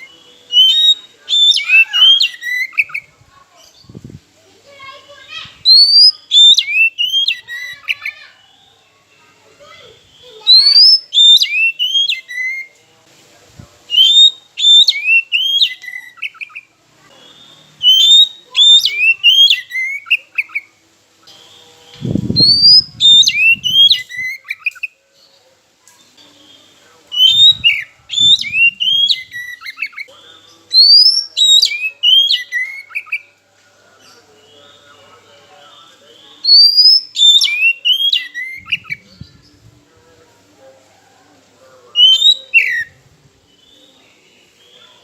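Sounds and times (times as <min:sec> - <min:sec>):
bird whistled song: 0:00.0 - 0:03.1, 0:05.6 - 0:08.0, 0:09.9 - 0:12.7, 0:13.9 - 0:20.7, 0:21.3 - 0:25.0, 0:26.4 - 0:30.1, 0:30.7 - 0:33.3, 0:36.4 - 0:39.2, 0:42.0 - 0:42.9.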